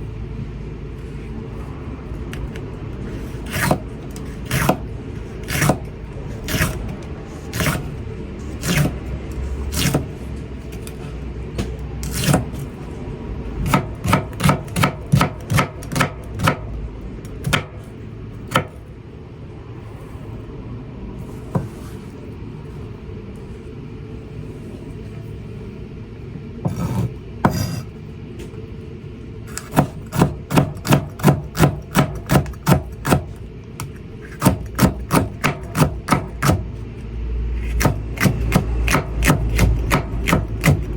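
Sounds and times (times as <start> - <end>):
steady low hum: 0.0 - 40.9
knife slicing peppers on board: 3.1 - 4.8, 5.4 - 8.0, 8.6 - 9.0, 9.6 - 10.2, 11.6 - 12.6, 13.6 - 16.6, 29.5 - 36.7, 37.6 - 40.9.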